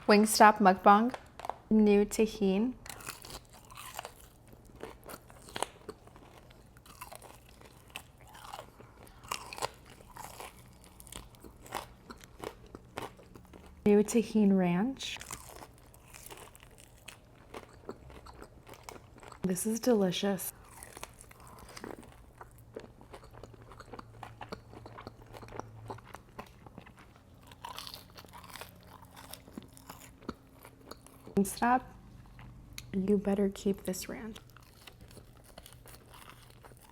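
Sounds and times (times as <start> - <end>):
person crunching and chewing food: 1.1 - 1.7, 2.8 - 13.9, 15.2 - 19.5, 20.5 - 33.0, 33.8 - 36.9.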